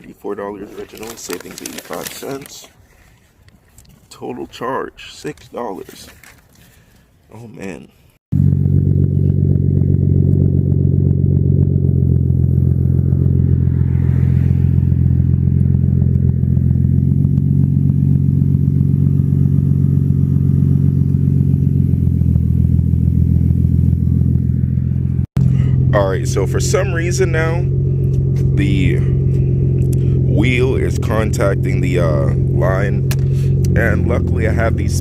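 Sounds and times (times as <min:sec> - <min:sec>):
car engine running steadily: 0:08.3 - 0:35.0.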